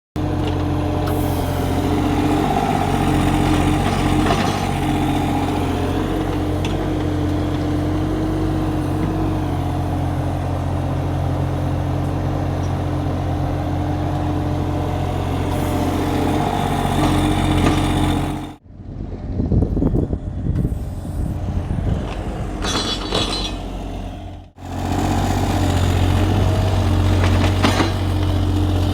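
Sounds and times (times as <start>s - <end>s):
excavator diesel engine running: 0.2s - 28.9s
irregular clatter and knocks: 21.9s - 23.9s, 26.2s - 28.9s.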